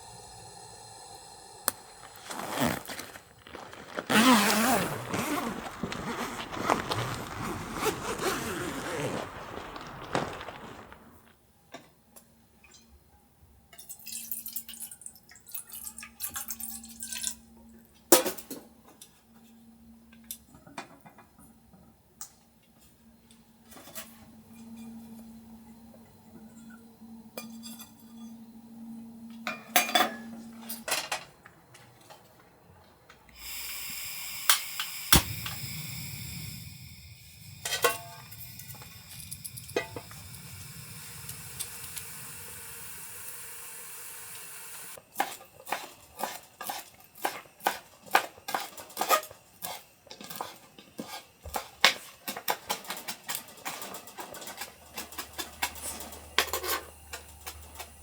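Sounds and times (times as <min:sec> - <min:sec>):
steady hiss: 0:00.0 - 0:11.4, 0:33.2 - 0:58.0.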